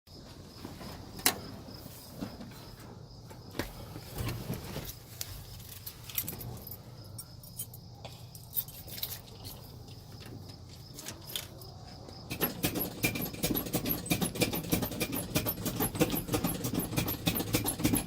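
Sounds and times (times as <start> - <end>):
keys jangling: 5.6 - 10.0.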